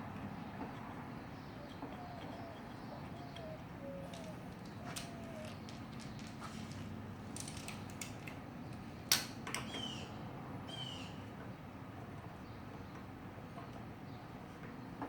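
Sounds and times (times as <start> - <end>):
birds chirping: 0.0 - 15.0
metal parts clinking: 3.4 - 9.3.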